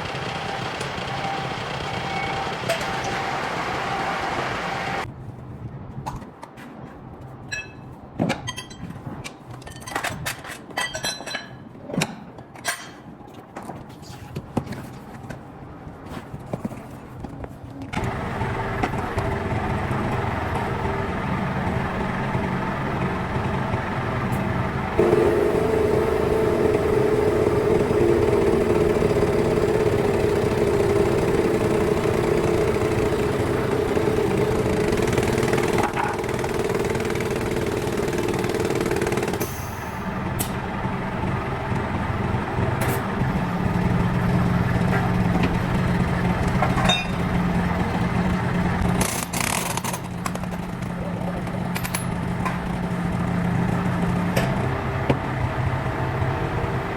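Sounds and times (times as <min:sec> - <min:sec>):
engine running: 0:00.0 - 0:05.1, 0:18.0 - 0:56.9.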